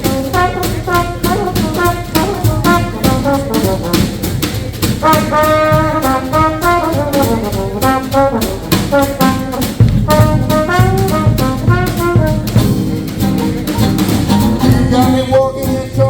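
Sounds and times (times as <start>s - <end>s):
brass horn solo: 0.0s - 4.3s, 5.0s - 12.7s
swing jazz rhythm section: 0.0s - 16.0s.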